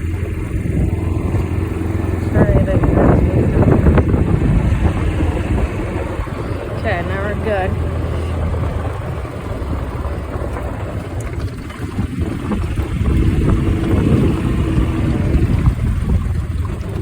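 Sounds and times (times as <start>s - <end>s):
steady hum: 0.0s - 9.2s
golf cart rumbling: 0.0s - 17.0s.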